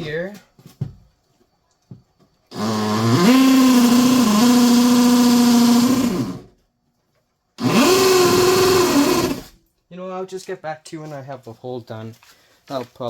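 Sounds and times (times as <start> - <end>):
electric drill whine: 2.5 - 6.5, 7.6 - 9.6.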